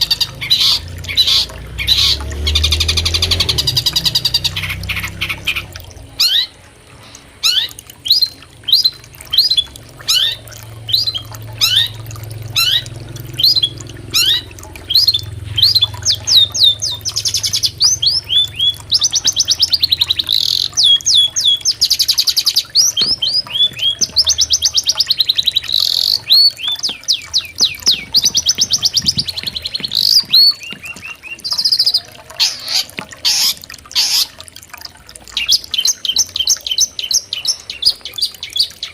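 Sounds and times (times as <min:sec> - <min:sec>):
bird singing chirps and trills: 0:00.0 - 0:34.4, 0:35.3 - 0:38.9
river water flowing: 0:00.0 - 0:38.9.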